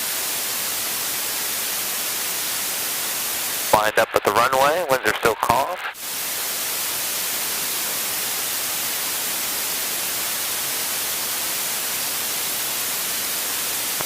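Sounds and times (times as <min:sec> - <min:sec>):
intercom static hiss: 0:03.6 - 0:06.0.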